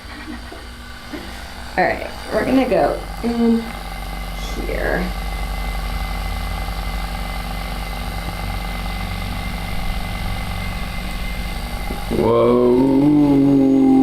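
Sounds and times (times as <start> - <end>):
electric massager motor hum: 0.0 - 14.0
person speaking: 11.9 - 14.0.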